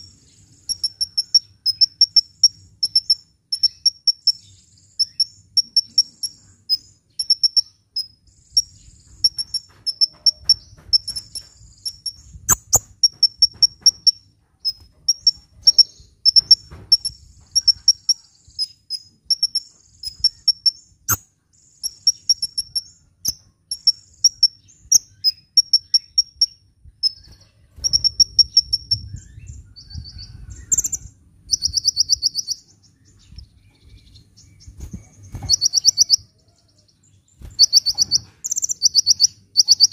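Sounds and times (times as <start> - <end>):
bird chirping: 0.0 - 39.9
sharp clicks: 9.2 - 18.2.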